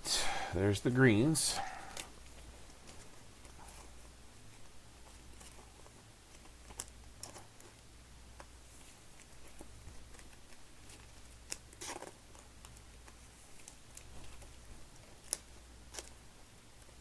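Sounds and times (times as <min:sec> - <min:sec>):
low steady hum: 0:00.0 - 0:17.0
card rustle: 0:08.4 - 0:16.2.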